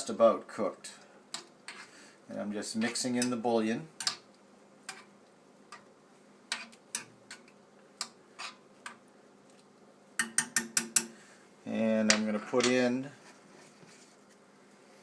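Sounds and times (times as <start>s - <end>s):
utensil clinking against bowl: 10.2s - 11.1s.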